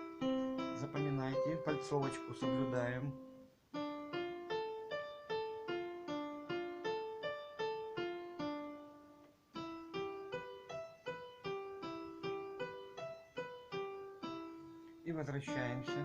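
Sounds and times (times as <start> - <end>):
keyboard piano arpeggio: 0.0 - 16.0.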